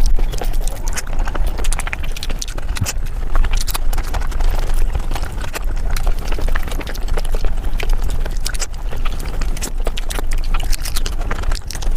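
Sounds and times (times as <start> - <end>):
wet chewing and mouth clicks: 0.0 - 11.9.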